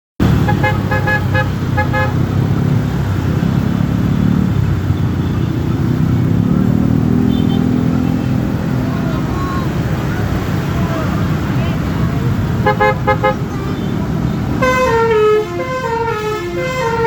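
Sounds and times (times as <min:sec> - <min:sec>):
musical bus horn notes: 0:00.2 - 0:02.4, 0:12.6 - 0:17.0
bus engine rumble: 0:00.2 - 0:17.0.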